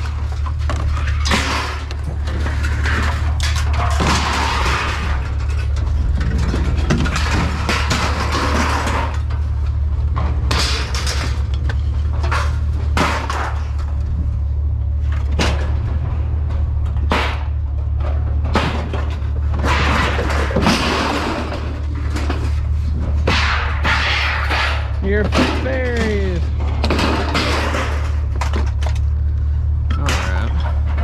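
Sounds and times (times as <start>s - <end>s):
scrap metal clanging onto pile: 0.0s - 14.0s, 15.0s - 29.2s
steady low hum: 0.0s - 31.0s.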